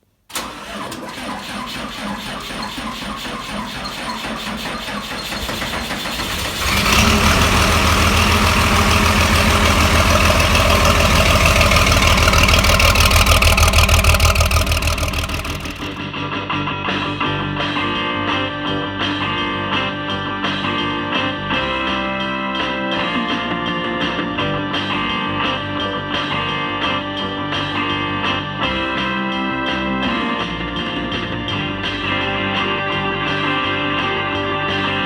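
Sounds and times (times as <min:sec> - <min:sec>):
large engine cranking and running: 0:00.3 - 0:16.0.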